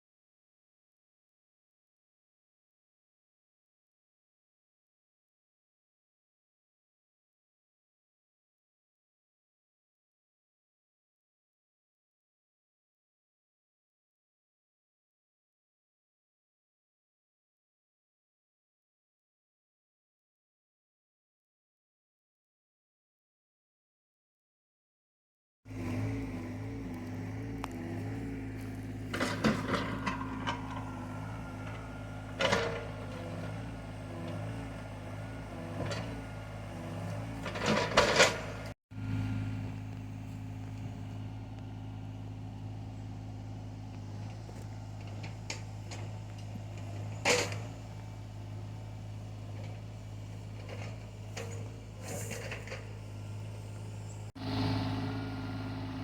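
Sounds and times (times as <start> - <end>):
excavator diesel engine running: 25.7 - 56.0.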